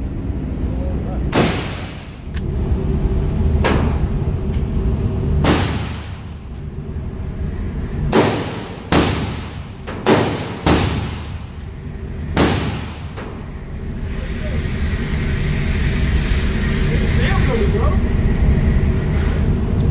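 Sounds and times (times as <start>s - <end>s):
handgun shots echoing indoors: 1.3s - 2.5s, 5.4s - 6.4s, 8.1s - 11.8s, 12.4s - 13.5s.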